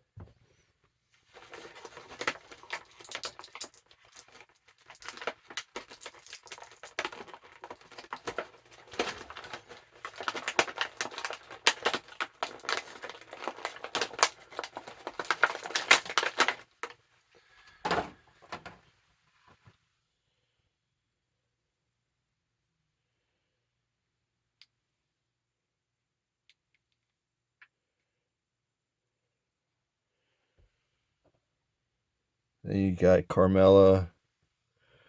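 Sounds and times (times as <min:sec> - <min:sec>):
packaging crackling and rustling: 0:01.2 - 0:17.0, 0:17.8 - 0:18.8.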